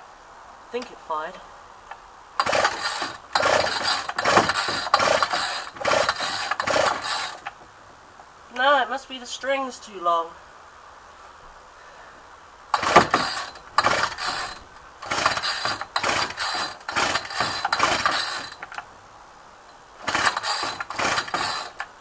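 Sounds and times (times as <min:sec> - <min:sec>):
trimmer pull-starter rasping: 0:02.4 - 0:07.6, 0:12.7 - 0:18.9, 0:20.0 - 0:22.0.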